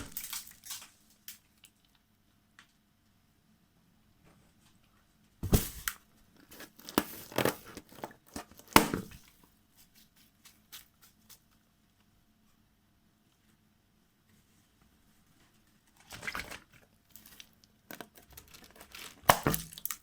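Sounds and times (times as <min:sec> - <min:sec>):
rubber crackling and crinkling: 0:05.4 - 0:11.4, 0:15.9 - 0:20.0.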